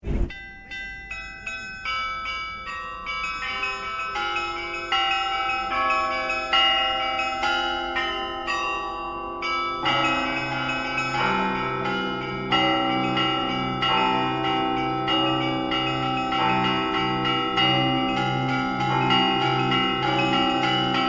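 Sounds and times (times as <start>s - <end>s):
low thump: 0.0s - 0.4s
large low church bells: 0.3s - 21.0s
small high church bells: 0.3s - 21.0s.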